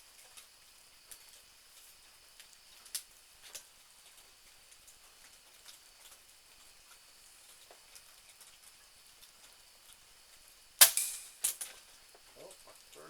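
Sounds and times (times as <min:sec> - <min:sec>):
small ticks: 0:00.0 - 0:10.6, 0:11.4 - 0:13.0
air pistol shot crack: 0:10.8 - 0:11.5.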